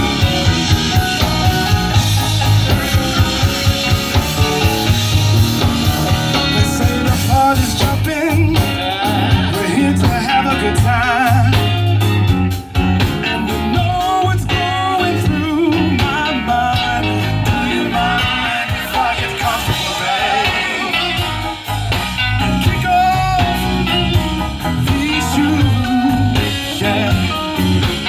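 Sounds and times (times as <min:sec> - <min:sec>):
bass line: 0:00.0 - 0:28.0
drums keeping a beat: 0:00.0 - 0:28.0
guitar: 0:00.0 - 0:28.0
person singing: 0:05.9 - 0:11.9, 0:24.9 - 0:27.9.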